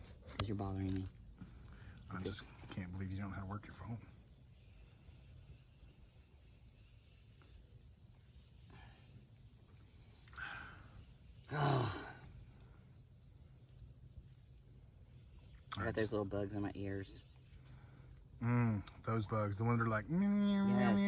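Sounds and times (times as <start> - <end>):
insects chorus: 0.0 - 21.0
short vocal sound: 11.5 - 12.2, 18.4 - 19.0.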